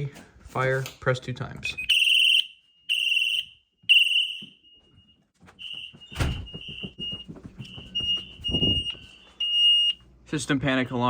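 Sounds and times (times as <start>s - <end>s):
alarm shrill beeps: 1.8s - 4.7s
knocks and thuds: 5.9s - 9.0s.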